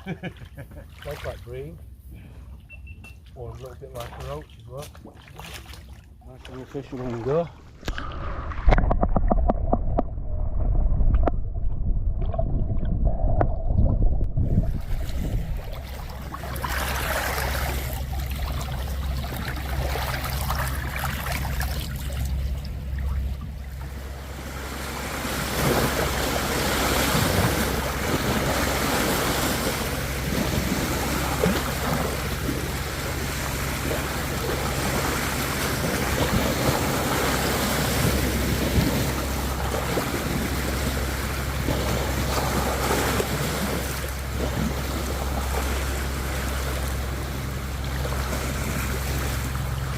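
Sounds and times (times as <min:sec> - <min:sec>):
water lapping: 0:00.0 - 0:11.3, 0:14.4 - 0:49.9
steady low hum: 0:00.0 - 0:49.9
wind noise on microphone: 0:07.6 - 0:17.3.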